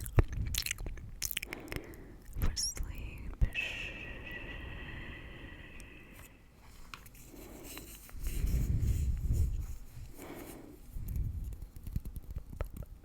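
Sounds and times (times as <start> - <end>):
gum chewing mouth clicks: 0.0 - 2.4.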